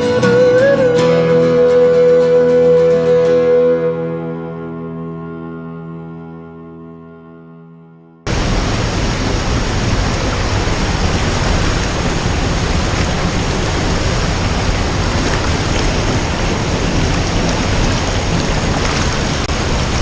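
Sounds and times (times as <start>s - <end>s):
mountain stream rapids rushing: 8.3s - 20.0s.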